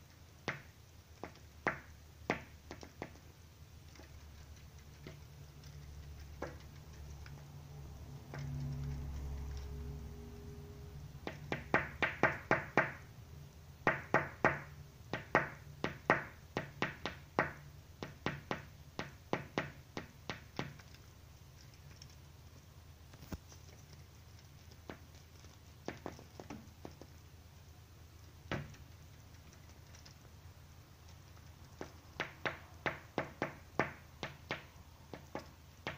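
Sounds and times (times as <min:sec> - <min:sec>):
bird pecking on glass: 0:00.4 - 0:03.3, 0:03.9 - 0:07.5, 0:11.2 - 0:13.0, 0:13.8 - 0:22.2, 0:23.1 - 0:27.2, 0:31.0 - 0:35.9.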